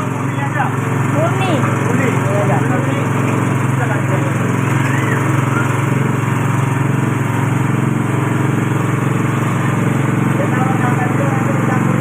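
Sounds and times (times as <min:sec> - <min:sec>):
pressing machine droning: 0:00.0 - 0:12.0.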